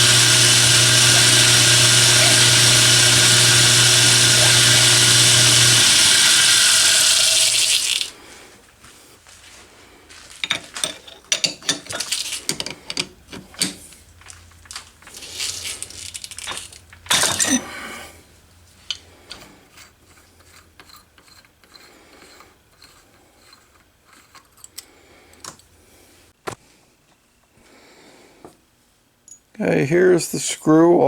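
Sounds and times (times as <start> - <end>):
hand file rasping on steel screw: 19.6 - 24.7.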